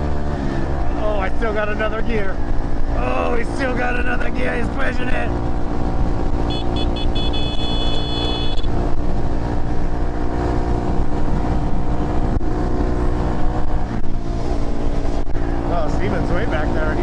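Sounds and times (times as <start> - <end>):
motorcycle engine running: 5.3 - 17.0
high beeping tone: 6.5 - 8.7
wind rumble on microphone: 8.6 - 17.0.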